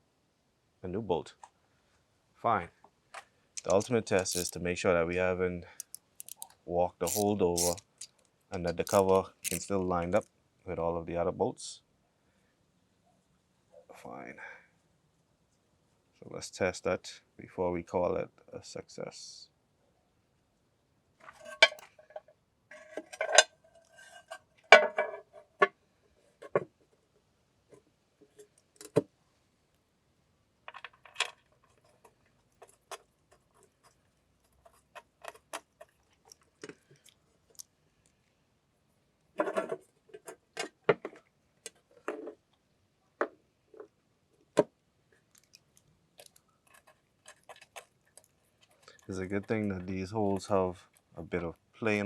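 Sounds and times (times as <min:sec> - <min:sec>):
metal bolts clinking and rattling: 0:03.6 - 0:04.6, 0:05.8 - 0:06.5, 0:07.1 - 0:09.7.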